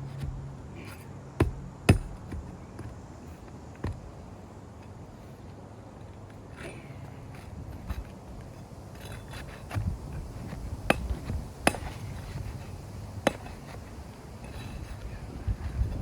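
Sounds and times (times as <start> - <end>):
hammer strikes: 1.4 - 2.4.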